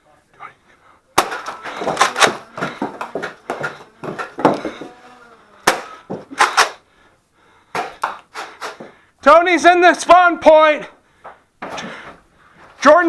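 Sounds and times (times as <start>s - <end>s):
foam-dart blasters clacking: 1.2s - 4.6s, 5.6s - 6.8s.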